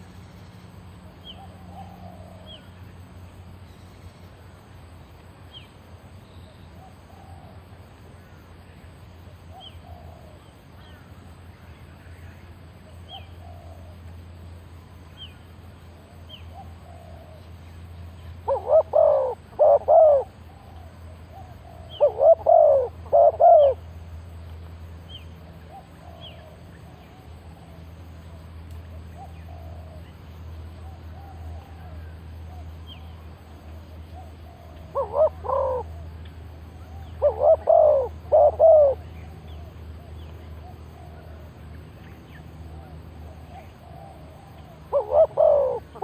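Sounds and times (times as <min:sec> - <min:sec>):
low steady hum: 0:00.0 - 0:46.0
dove cooing: 0:09.5 - 0:10.4, 0:18.4 - 0:23.8, 0:29.2 - 0:30.1, 0:34.1 - 0:36.1, 0:36.7 - 0:41.4, 0:42.8 - 0:46.0.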